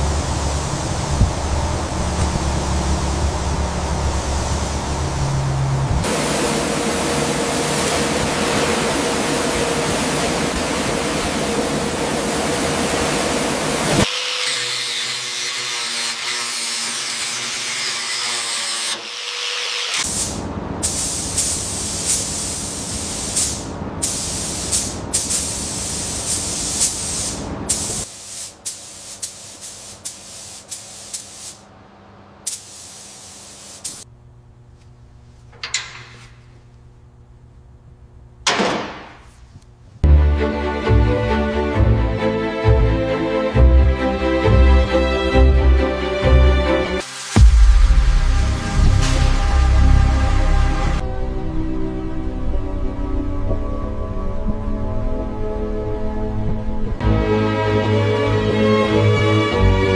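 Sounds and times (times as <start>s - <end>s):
spraying hiss: 6.0s - 14.5s, 19.9s - 31.7s, 32.5s - 34.1s, 47.0s - 47.5s
tools clicking and knocking on metal: 35.5s - 36.5s.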